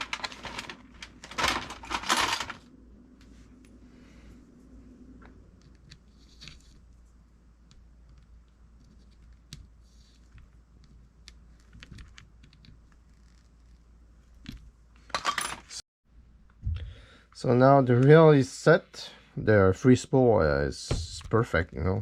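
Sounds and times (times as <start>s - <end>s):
handling clatter: 0.0s - 2.6s.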